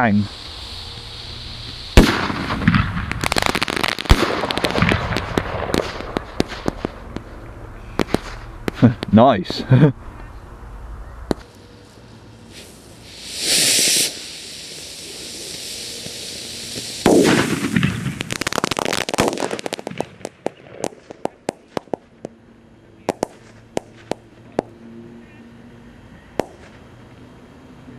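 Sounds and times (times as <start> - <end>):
firework hiss: 0.0 - 9.9, 11.3 - 22.3
crackle of sharp pops: 1.6 - 9.2, 11.3 - 11.5, 13.3 - 22.4, 23.0 - 24.8, 26.4 - 26.9
firework bang: 1.6 - 9.2, 12.5 - 22.1.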